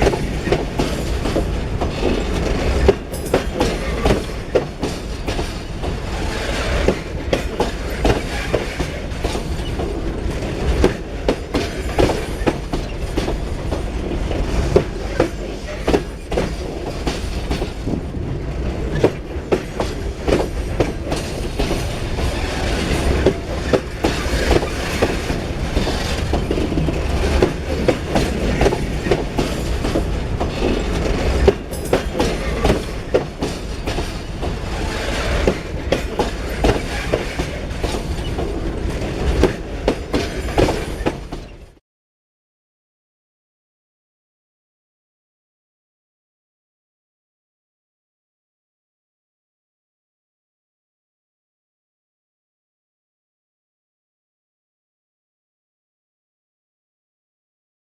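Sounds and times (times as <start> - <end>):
freight train rumble: 0.0 - 41.8
wheels clacking over rail joints: 0.0 - 41.8.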